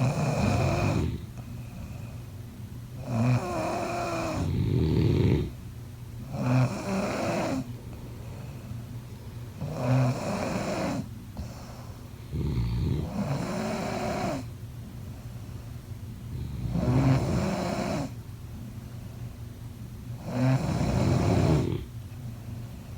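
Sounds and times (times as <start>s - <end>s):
quiet breathing: 0.6s - 2.4s, 7.5s - 17.2s
person snoring: 20.3s - 21.9s.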